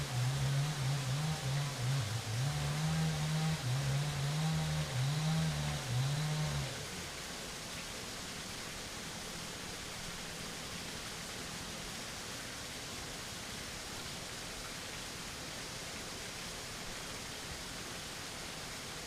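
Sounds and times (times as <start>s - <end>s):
river water rushing: 0.0s - 19.0s.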